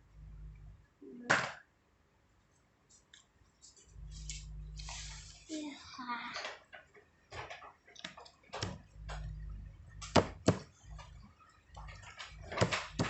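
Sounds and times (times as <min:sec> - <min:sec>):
low hum: 0:00.0 - 0:01.0, 0:03.8 - 0:05.5, 0:08.6 - 0:13.0
sharp clicks and knocks: 0:06.4 - 0:13.0.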